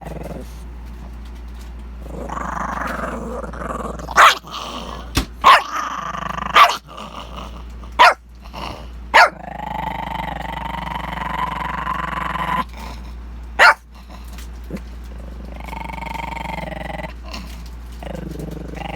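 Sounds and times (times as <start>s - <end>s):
puppy growling: 0.0s - 18.9s
puppy barking: 4.1s - 4.5s, 5.4s - 5.8s, 6.5s - 6.8s, 8.0s - 8.2s, 9.1s - 9.4s, 13.6s - 13.8s.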